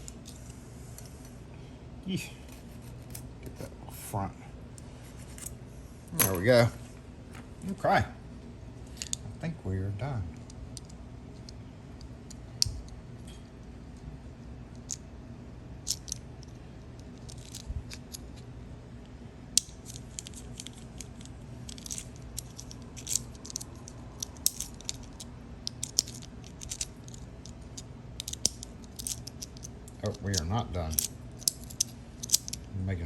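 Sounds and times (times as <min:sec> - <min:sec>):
low steady hum: 0:00.0 - 0:33.0
key and lock clinking: 0:19.6 - 0:32.7.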